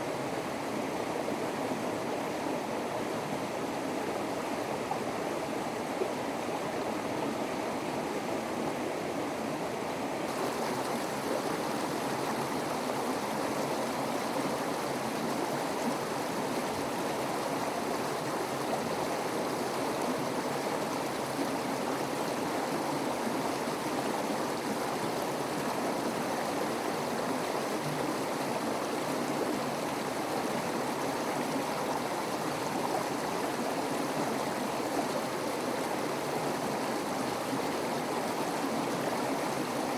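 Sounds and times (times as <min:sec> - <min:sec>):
water rushing: 0:10.3 - 0:39.9.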